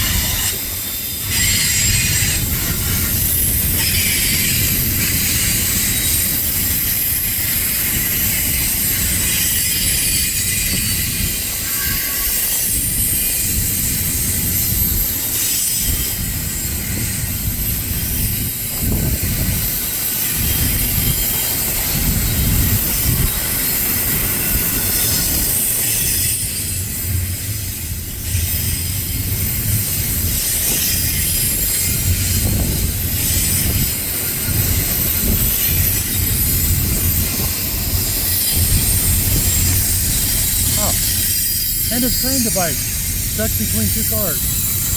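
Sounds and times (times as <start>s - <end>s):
freight train cars rolling past: 0.0s - 44.9s.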